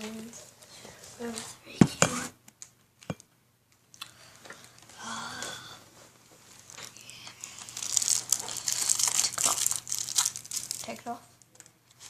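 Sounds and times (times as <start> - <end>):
aluminium foil crinkling: 6.5 - 12.0
tape tearing: 6.7 - 11.0.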